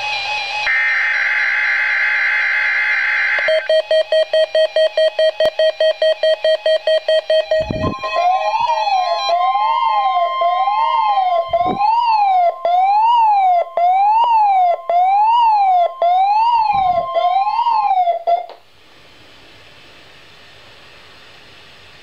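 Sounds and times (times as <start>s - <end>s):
warbling siren-like alarm: 0.0s - 4.1s, 6.7s - 18.5s
steady high alarm tone: 0.0s - 18.5s.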